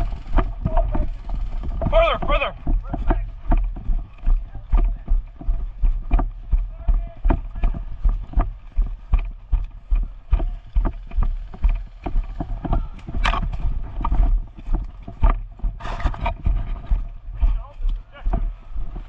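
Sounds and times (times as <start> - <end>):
footsteps thumping on microphone: 0.0 - 19.0.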